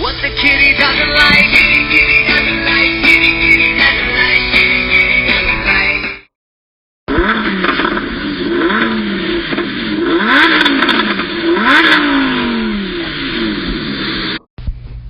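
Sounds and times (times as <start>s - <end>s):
car engine revving ringtone: 7.2s - 14.4s.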